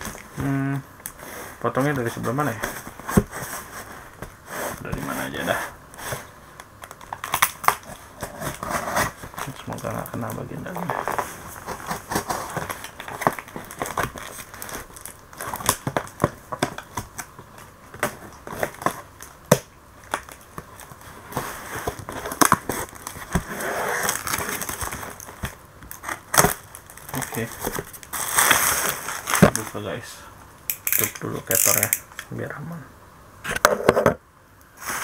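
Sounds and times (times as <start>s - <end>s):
plastic packaging crinkling: 6.7s - 21.2s, 21.8s - 30.0s.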